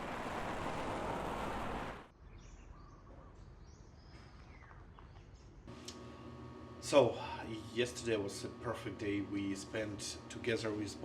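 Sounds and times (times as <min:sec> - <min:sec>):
falling water rushing: 0:00.0 - 0:02.1
faint bird chirps: 0:02.2 - 0:05.7.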